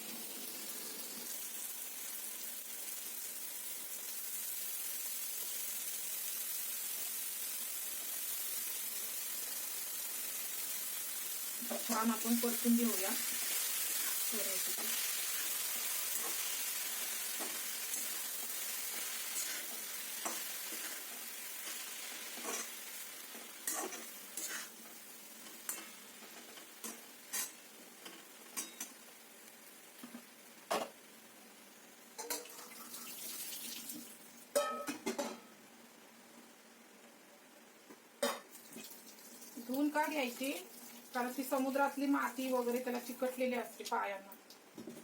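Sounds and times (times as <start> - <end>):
food sizzling in hot oil: 0.0 - 35.6, 38.2 - 44.2
spatula scraping and tapping pan: 17.3 - 29.0.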